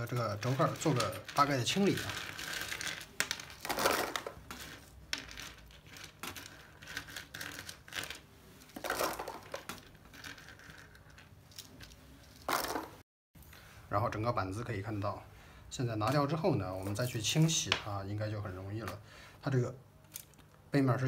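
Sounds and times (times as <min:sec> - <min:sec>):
plastic parts clicking and clattering: 0:00.0 - 0:13.0.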